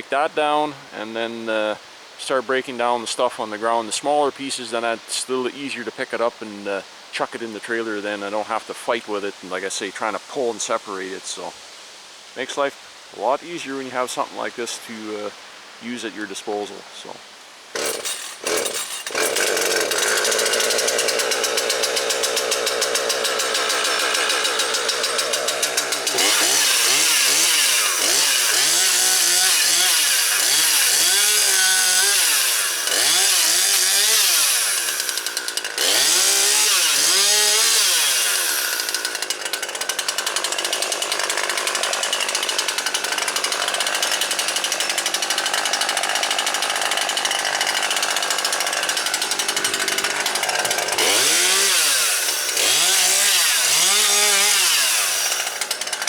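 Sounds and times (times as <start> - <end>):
chainsaw cutting wood: 17.7 - 56.0.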